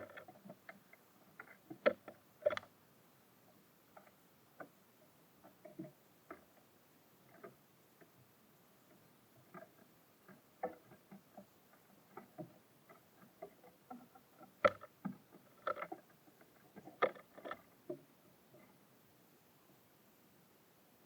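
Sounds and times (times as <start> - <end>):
birds pecking at a feeder: 0.0 - 2.7, 5.4 - 18.0.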